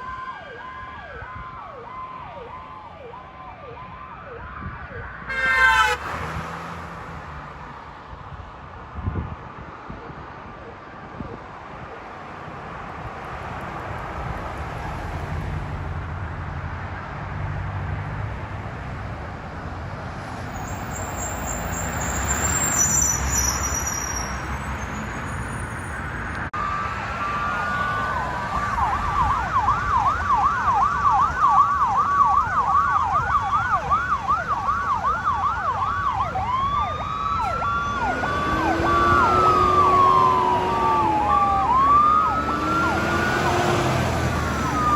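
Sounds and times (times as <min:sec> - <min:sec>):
electronic siren yelp and wail: 0:00.0 - 0:06.0, 0:26.6 - 0:44.9
road noise: 0:00.0 - 0:44.9.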